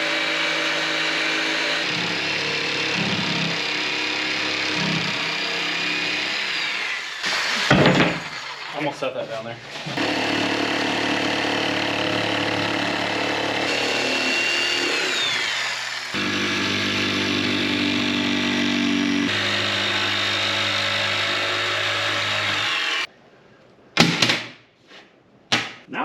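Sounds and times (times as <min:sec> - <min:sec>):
electric power tool motor running: 0:09.6 - 0:23.1.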